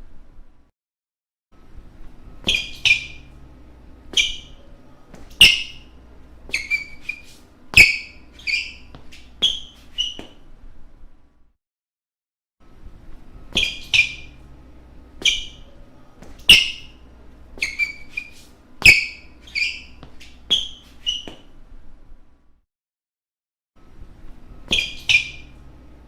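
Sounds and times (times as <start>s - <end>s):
faint background hum: 1.6s - 11.5s, 12.6s - 22.6s, 23.8s - 26.0s
shoes squeaking on a floor: 2.4s - 3.4s, 4.1s - 10.4s, 13.5s - 14.4s, 15.2s - 21.6s, 24.6s - 25.7s.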